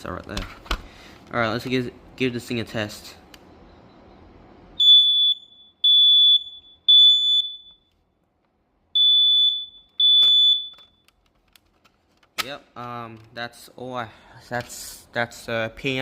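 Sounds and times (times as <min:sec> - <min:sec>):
smoke alarm beeping: 0:04.8 - 0:08.0, 0:08.9 - 0:11.1.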